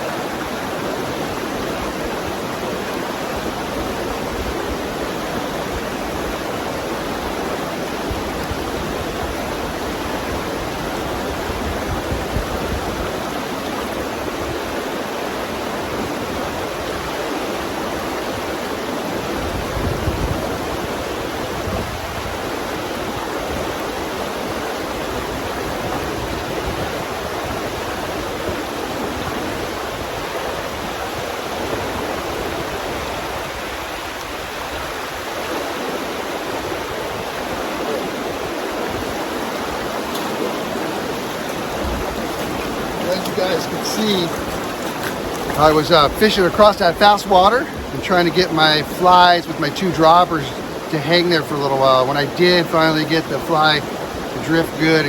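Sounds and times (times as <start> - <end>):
river water rushing over rocks: 0.0 - 55.0.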